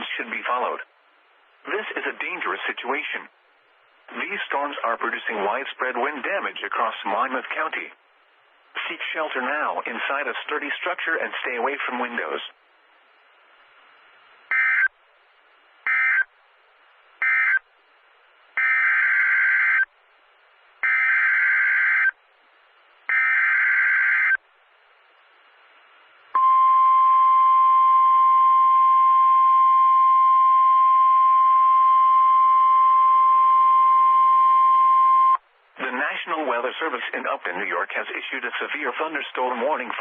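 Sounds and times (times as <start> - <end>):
steady warning alarm tone: 14.5 - 14.9, 15.9 - 16.3, 17.2 - 17.6, 18.6 - 19.9, 20.8 - 22.2, 23.1 - 24.4.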